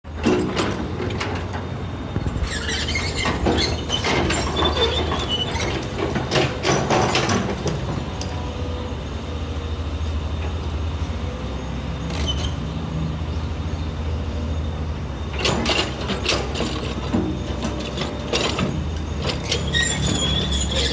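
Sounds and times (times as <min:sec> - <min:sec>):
diesel engine low drone: 0:00.1 - 0:20.9
metallic clanking and squeaking: 0:02.2 - 0:08.3, 0:12.1 - 0:12.6, 0:15.3 - 0:20.9.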